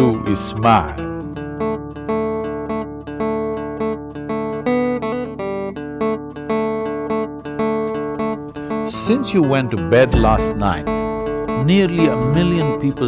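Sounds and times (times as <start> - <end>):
acoustic guitar plucking: 0.9 - 13.0.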